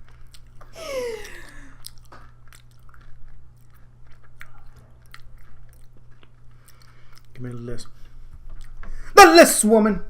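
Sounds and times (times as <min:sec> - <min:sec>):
chewing crunchy wafer: 0:00.0 - 0:00.6, 0:01.7 - 0:08.0.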